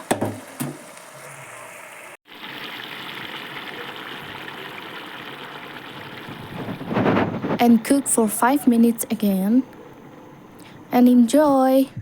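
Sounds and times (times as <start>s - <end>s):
water pouring into a pot: 0.0s - 7.5s.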